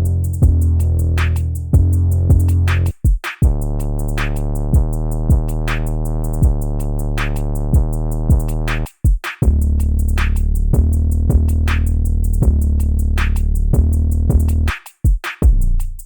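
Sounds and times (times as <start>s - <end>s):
sustained bass: 0.0s - 14.7s
rapid hi-hats: 0.0s - 16.0s
sharp snare or clap hits: 1.2s - 1.5s, 2.7s - 3.5s, 4.2s - 4.5s, 5.7s - 6.0s, 7.2s - 7.5s, 11.7s - 12.0s, 13.2s - 13.5s.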